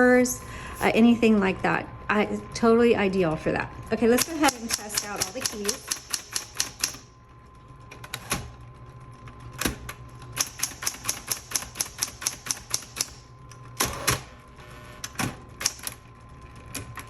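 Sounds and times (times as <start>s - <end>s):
typewriter motor hum: 3.6s - 17.0s
typewriter keys striking: 4.2s - 7.0s, 10.4s - 13.1s.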